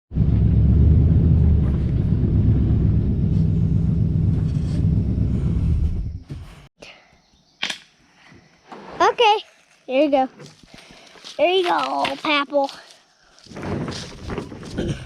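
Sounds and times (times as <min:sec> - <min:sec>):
vehicle engine rumbling: 0:00.1 - 0:06.7.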